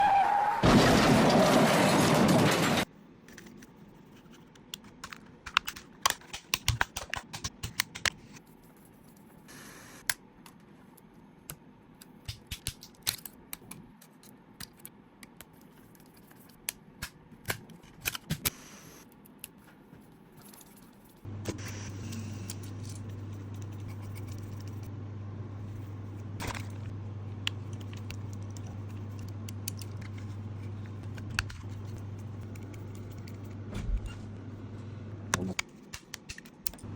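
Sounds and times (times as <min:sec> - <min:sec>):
steady low hum: 0:21.0 - 0:36.9.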